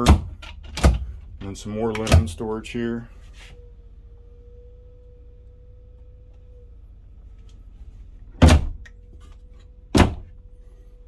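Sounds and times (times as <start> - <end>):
faint steady hum: 0.0 - 11.0
cabinet door shutting: 8.4 - 8.8, 10.0 - 10.3.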